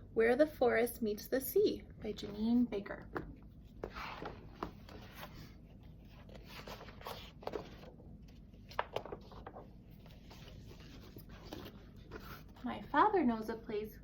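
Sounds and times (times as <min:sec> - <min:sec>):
book pages rustling: 0:02.2 - 0:13.0.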